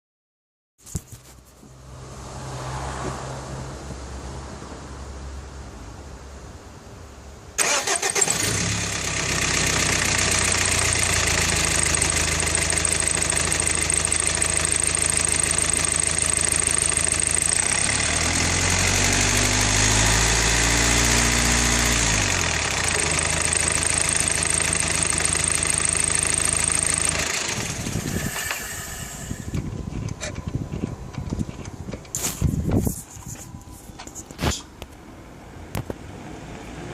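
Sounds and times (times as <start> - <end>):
diesel engine starting idling revving: 7.6 - 29.6.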